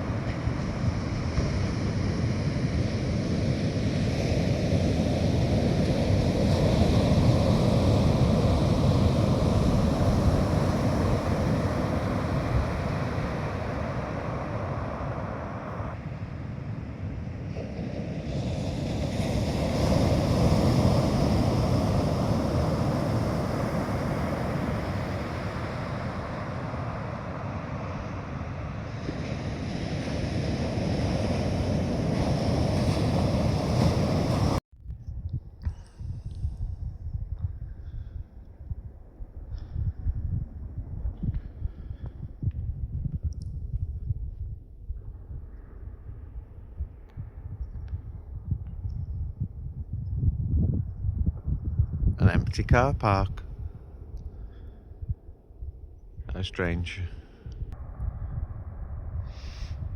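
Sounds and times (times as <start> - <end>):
surf breaking on beach: 0.0 - 34.6
wind buffeting microphone: 0.0 - 56.3, 57.4 - 59.9.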